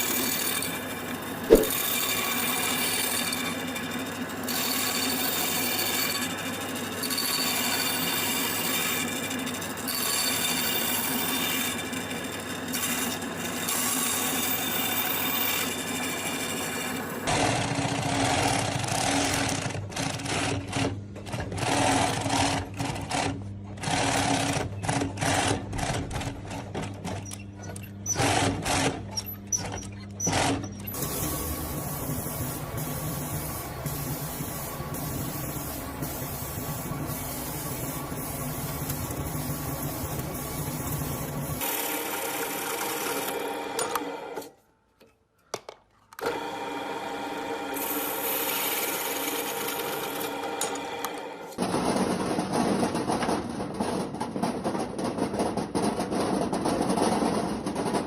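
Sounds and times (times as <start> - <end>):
small machine running: 0.0 - 19.6, 27.1 - 44.5.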